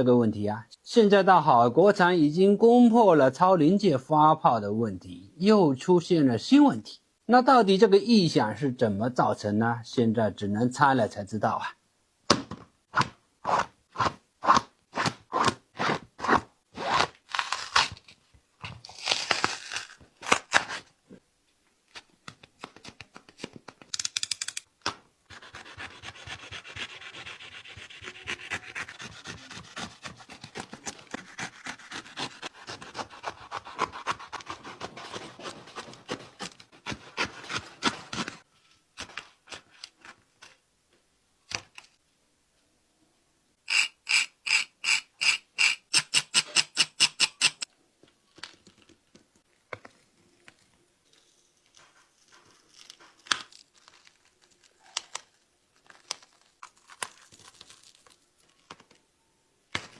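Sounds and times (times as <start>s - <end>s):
rubbing and scraping: 25.3s - 38.5s.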